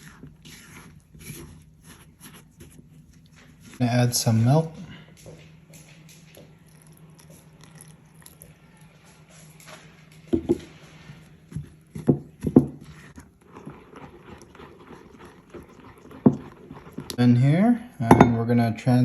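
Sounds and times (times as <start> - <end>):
batter stirring in a bowl: 0.0 - 19.0.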